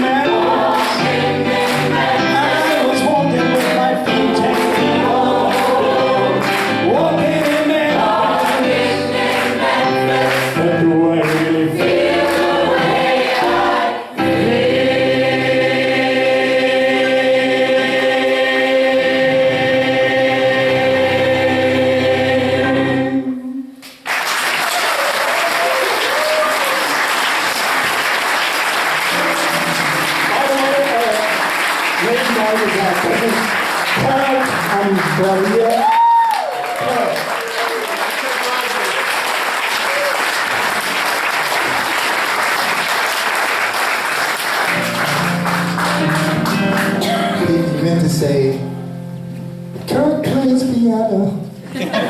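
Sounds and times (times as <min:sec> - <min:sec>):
choir singing in harmony: 0:00.0 - 0:23.8
instrumental accompaniment: 0:00.0 - 0:23.8, 0:28.7 - 0:35.4, 0:44.2 - 0:52.0.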